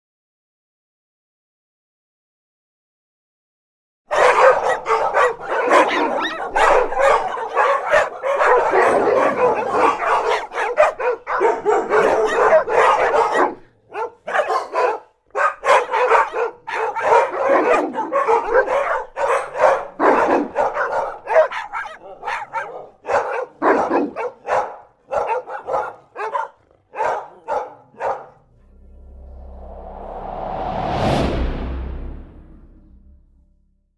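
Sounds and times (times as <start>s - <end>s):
pack of dogs barking: 4.1s - 28.5s.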